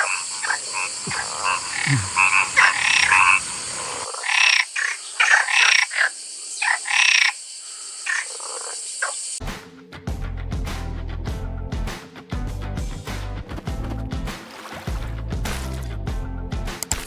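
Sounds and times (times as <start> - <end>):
steady high hiss: 0.0 - 4.1
frogs croaking: 0.0 - 9.4.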